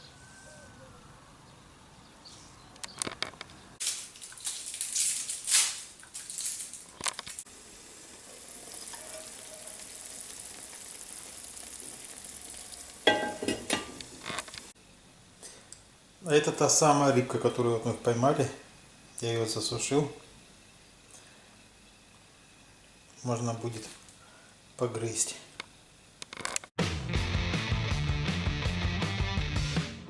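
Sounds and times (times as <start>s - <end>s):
food sizzling in a frying pan: 3.8s - 14.8s.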